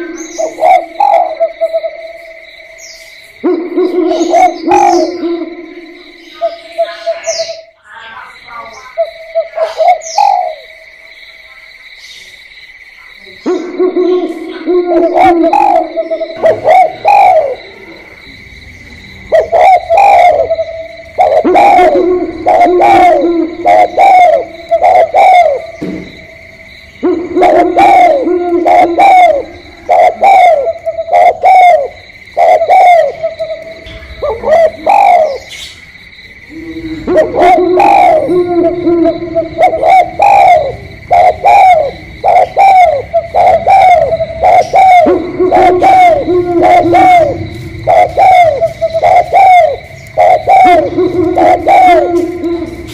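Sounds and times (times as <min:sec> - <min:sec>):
doves cooing: 0:00.0 - 0:07.8, 0:08.4 - 0:11.1, 0:13.4 - 0:52.9
steady high-pitched tone: 0:00.0 - 0:07.8, 0:19.3 - 0:35.4, 0:36.4 - 0:52.9.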